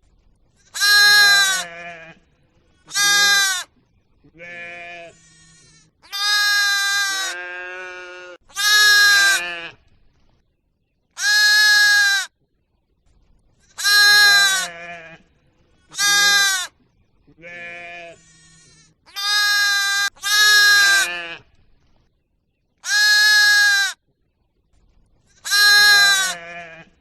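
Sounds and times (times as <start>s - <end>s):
livestock bleating: 0.7s - 3.7s, 4.3s - 9.8s, 11.2s - 12.3s, 13.7s - 15.3s, 15.9s - 21.5s, 22.8s - 24.0s, 25.4s - 27.0s.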